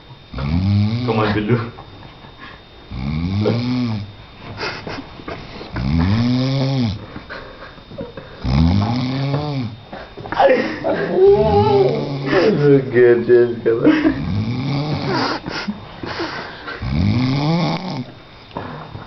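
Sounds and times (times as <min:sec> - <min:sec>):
man snoring: 0:00.3 - 0:01.3, 0:02.9 - 0:04.1, 0:05.6 - 0:07.1, 0:08.4 - 0:09.8, 0:11.0 - 0:12.8, 0:14.0 - 0:15.4, 0:16.6 - 0:18.9.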